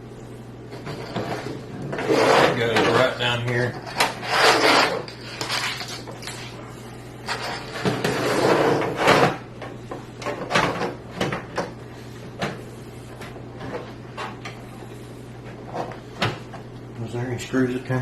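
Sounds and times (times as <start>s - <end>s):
power supply scraping slide: 0.8s - 3.1s, 3.9s - 5.6s.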